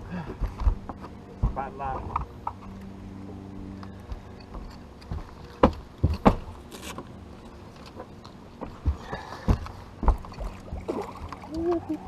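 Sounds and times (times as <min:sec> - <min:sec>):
low motor hum: 0:00.0 - 0:12.0
sharp knocks on boat: 0:05.6 - 0:06.5.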